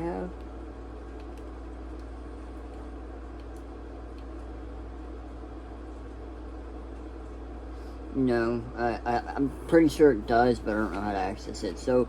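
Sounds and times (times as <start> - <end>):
low electrical fan hum: 0.0 - 12.0.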